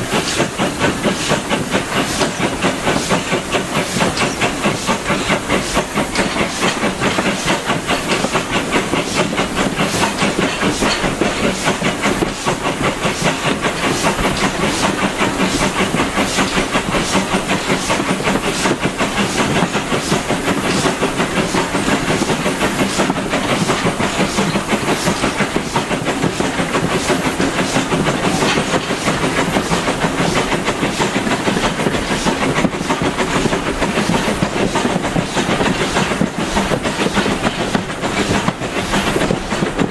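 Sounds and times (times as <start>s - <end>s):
steam engine working: 0.0s - 39.9s
steam hissing: 0.0s - 39.9s
train wheels clickety-clack on rails: 0.0s - 39.9s.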